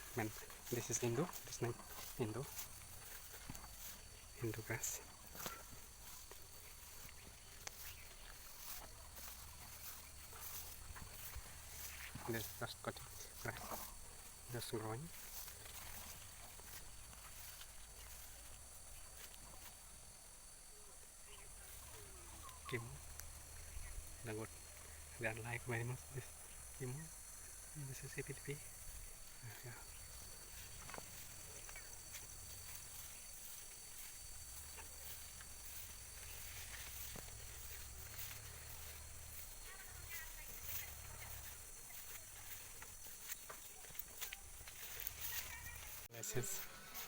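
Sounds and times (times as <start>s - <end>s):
faint ticks: 0.0s - 12.6s, 22.4s - 25.0s.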